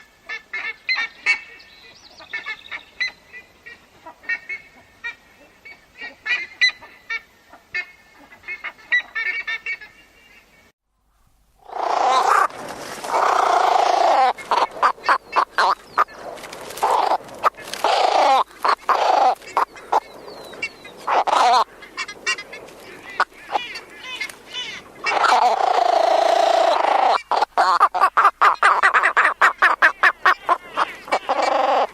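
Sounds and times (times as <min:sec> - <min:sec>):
harsh hoarse bird calls: 0:13.1 - 0:16.2, 0:16.8 - 0:31.9.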